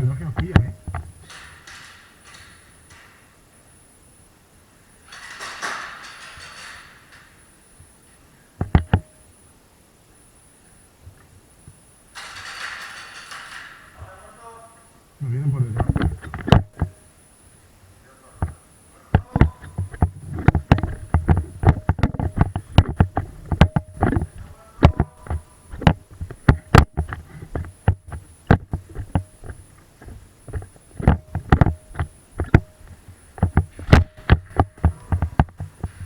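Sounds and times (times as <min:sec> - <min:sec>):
sharp clicks and knocks: 0:00.0 - 0:03.3, 0:05.1 - 0:07.9, 0:08.6 - 0:09.2, 0:11.1 - 0:14.0, 0:15.8 - 0:17.0, 0:18.4 - 0:36.0
dull thuds: 0:19.2 - 0:36.0.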